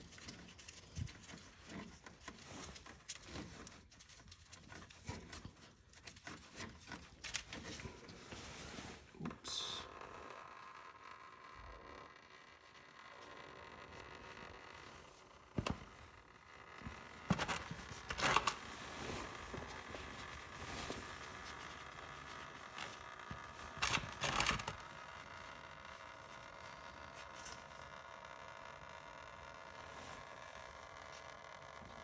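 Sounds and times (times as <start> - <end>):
scraping and rustling of parts: 0.0 - 9.2, 16.8 - 25.0.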